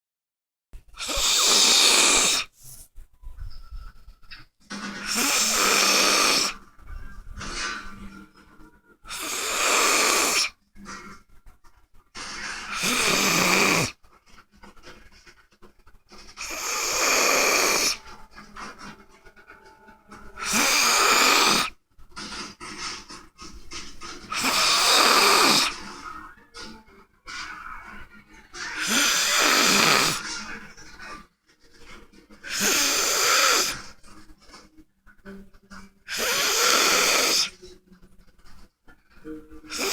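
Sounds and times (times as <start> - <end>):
quiet breaths: 0.8 - 39.9
man snoring loudly: 1.0 - 2.5, 5.1 - 6.6, 9.1 - 10.5, 12.6 - 14.0, 16.4 - 18.0, 20.4 - 21.7, 24.3 - 25.8, 28.8 - 30.2, 32.5 - 33.8, 36.1 - 37.5.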